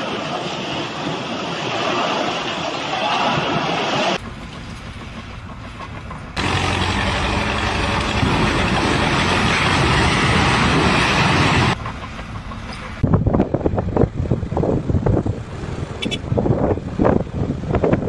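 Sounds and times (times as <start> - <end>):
vehicle engine and road noise: 4.2 - 18.0.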